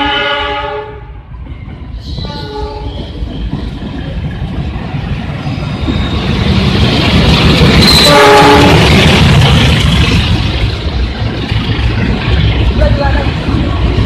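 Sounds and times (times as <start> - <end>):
locomotive horn blast: 0.0 - 1.1, 7.8 - 9.0
train rumble and wheel noise: 0.0 - 14.0.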